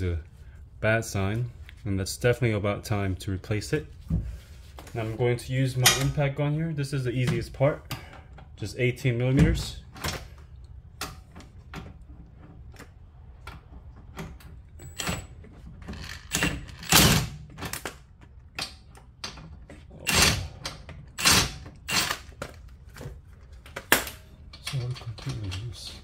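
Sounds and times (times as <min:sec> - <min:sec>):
impact wrench hammering: 0:21.2 - 0:22.3.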